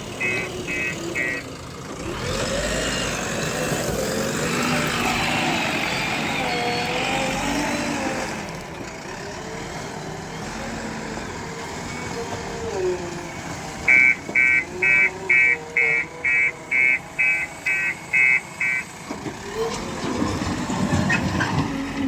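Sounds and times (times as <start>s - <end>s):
heavy machine engine running: 0.0s - 22.0s
reversing alarm beeping: 0.1s - 1.5s, 13.9s - 18.9s.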